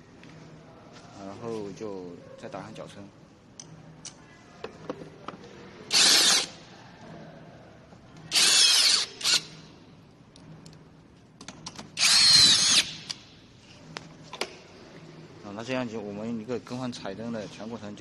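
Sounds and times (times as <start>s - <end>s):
electric screwdriver whining: 5.9s - 6.5s, 8.3s - 9.5s, 12.0s - 13.0s.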